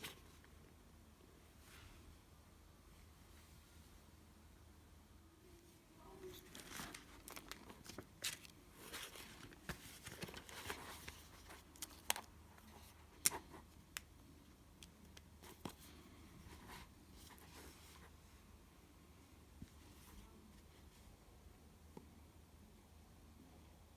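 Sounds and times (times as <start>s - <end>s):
book pages turning: 6.2s - 14.1s.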